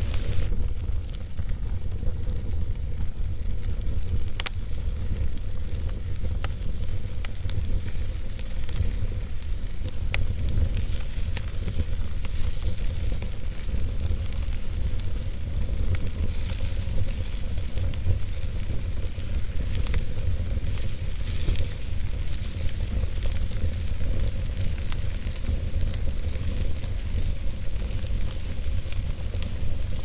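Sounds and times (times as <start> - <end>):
fire crackling and popping: 0.0 - 30.0
fire rumbling and hissing: 0.0 - 30.0.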